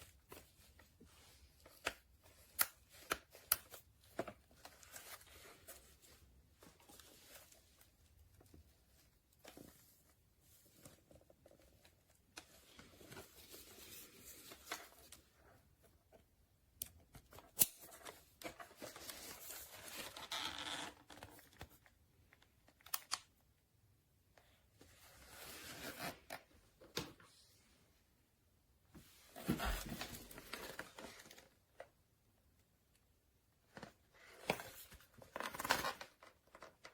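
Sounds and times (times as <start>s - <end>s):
rustling and scraping: 29.0s - 31.4s.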